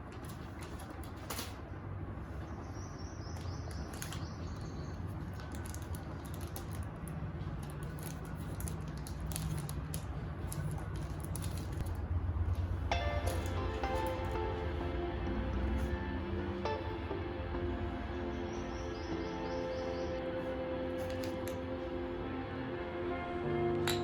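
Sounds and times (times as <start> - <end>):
low steady hum: 0.0 - 24.0
small plastic pieces clicking: 3.4 - 12.0
packaging rustling: 3.7 - 14.4, 21.0 - 21.6.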